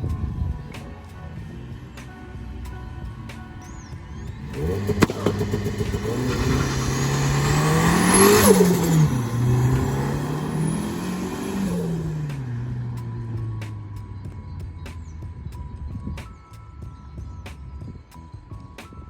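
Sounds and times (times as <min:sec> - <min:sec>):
turbocharged engine accelerating: 0:00.0 - 0:16.0
hissing turbo flutter: 0:02.5 - 0:12.3.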